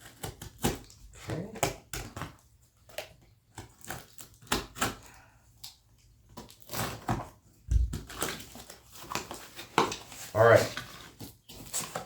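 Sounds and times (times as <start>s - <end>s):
cardboard rustling and scraping: 6.5s - 12.0s.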